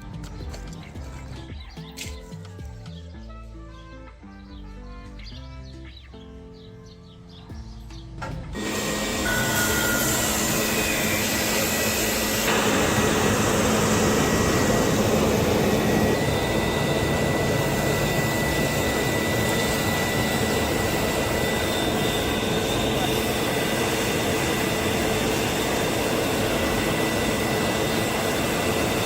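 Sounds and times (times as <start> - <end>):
machine motor hissing and whining: 8.5 - 29.0.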